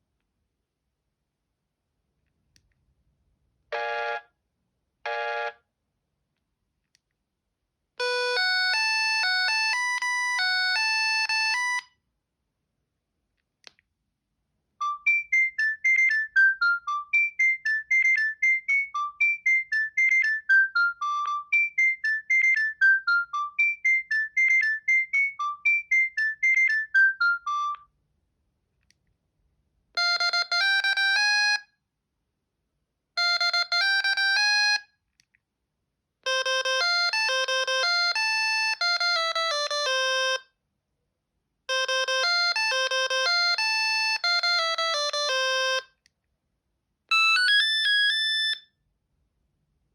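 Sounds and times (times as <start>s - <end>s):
mobile phone ringtone: 8.0s - 11.8s, 30.0s - 31.6s, 33.2s - 34.8s, 36.3s - 40.4s, 41.7s - 45.8s, 47.1s - 48.6s.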